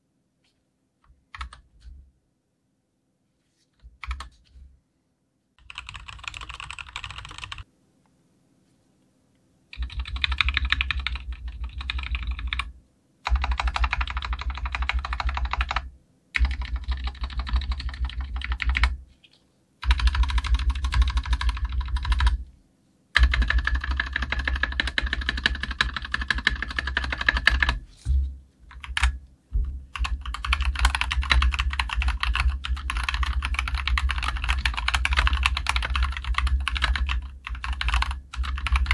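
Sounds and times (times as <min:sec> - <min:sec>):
mechanical keyboard typing: 0:01.3 - 0:01.7, 0:04.0 - 0:04.4, 0:05.6 - 0:07.6, 0:09.7 - 0:19.0, 0:19.8 - 0:22.4, 0:23.2 - 0:27.8, 0:28.7 - 0:29.2, 0:29.9 - 0:38.9.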